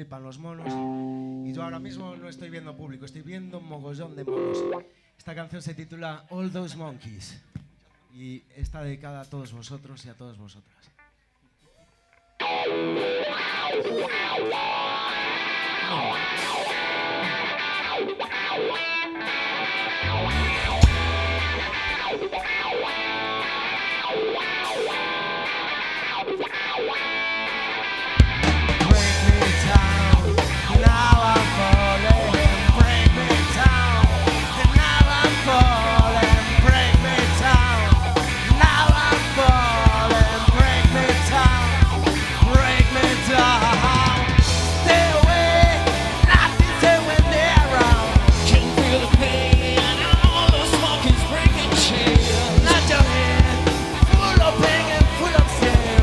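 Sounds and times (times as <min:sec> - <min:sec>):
bass guitar: 0:00.6 - 0:02.8, 0:12.7 - 0:56.0
electric guitar: 0:00.6 - 0:03.2, 0:04.3 - 0:04.9, 0:12.4 - 0:56.0
drums: 0:08.6 - 0:09.0, 0:14.6 - 0:18.0, 0:20.1 - 0:56.0.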